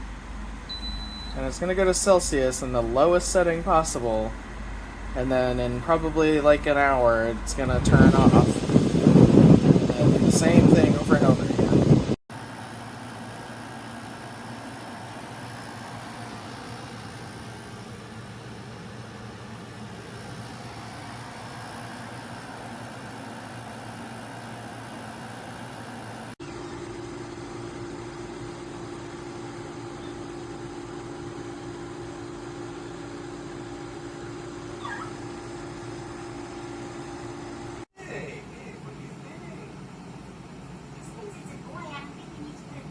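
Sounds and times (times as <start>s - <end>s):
air conditioner humming: 0.0s - 42.9s
short high chirp: 0.7s - 1.4s.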